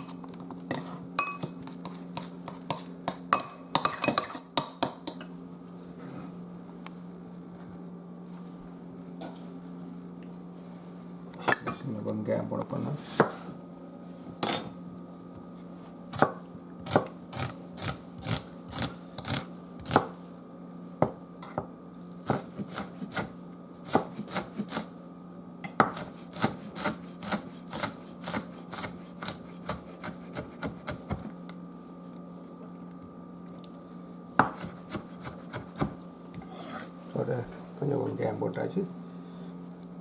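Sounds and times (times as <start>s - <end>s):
knife chopping on cutting board: 13.1s - 13.4s, 16.1s - 20.2s, 22.2s - 24.9s, 25.8s - 31.3s, 34.4s - 36.8s.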